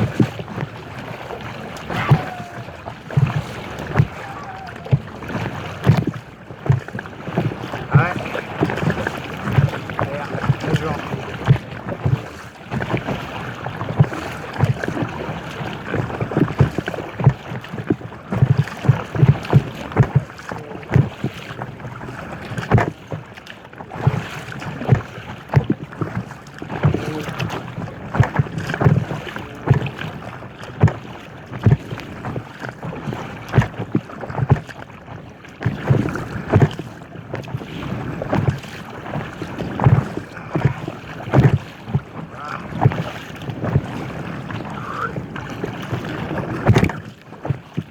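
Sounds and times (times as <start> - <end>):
wind buffeting microphone: 0.0 - 23.1, 35.7 - 47.9
steady water wash: 0.0 - 47.9
water splashing around kayak: 0.0 - 47.9.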